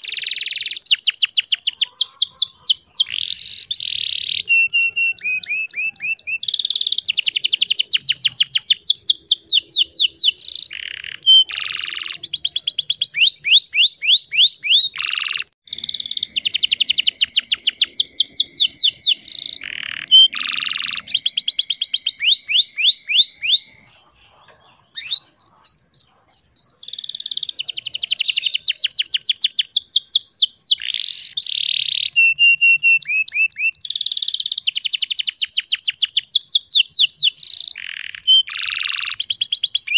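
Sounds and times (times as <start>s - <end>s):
canary singing trilled phrases: 0.0s - 39.9s.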